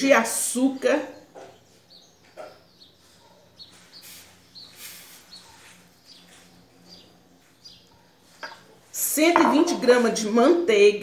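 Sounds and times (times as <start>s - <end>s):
faint bird chirps: 1.0s - 8.7s.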